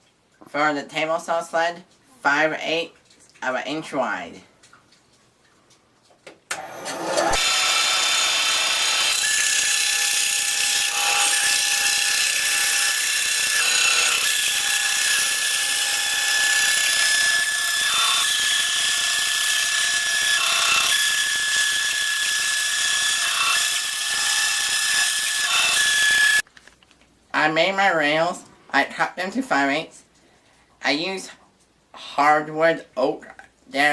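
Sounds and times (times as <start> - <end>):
bandsaw cutting wood: 6.5 - 26.4.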